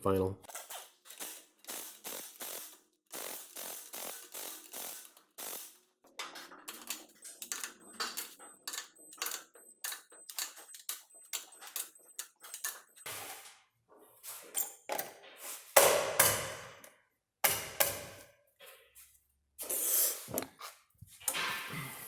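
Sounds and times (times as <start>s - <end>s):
metallic clicks of hand tools: 6.7s - 13.1s.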